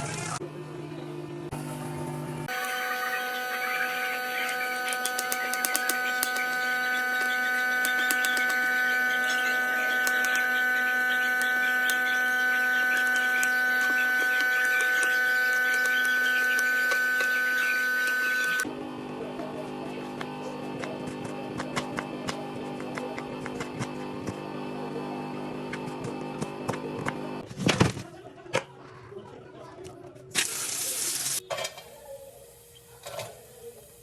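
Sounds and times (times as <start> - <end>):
small electric motor humming: 1.5 - 27.4.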